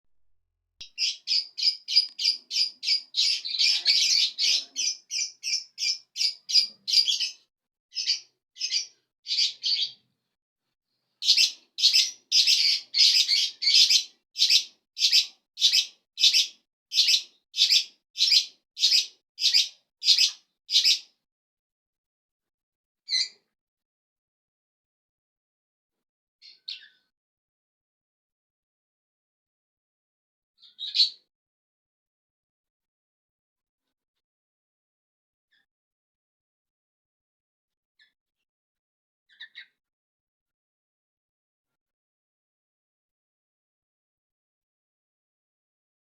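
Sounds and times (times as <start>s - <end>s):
small bird chirping: 0.8s - 10.1s, 11.2s - 21.2s, 23.1s - 23.5s, 26.4s - 27.1s, 30.6s - 31.3s, 39.3s - 39.8s.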